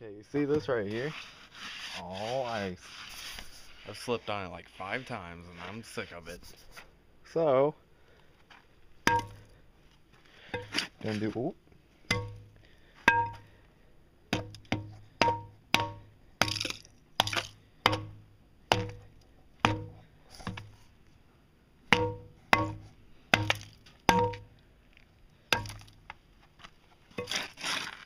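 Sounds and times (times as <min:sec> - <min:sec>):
hand tool chipping ice: 0:27.2 - 0:28.0.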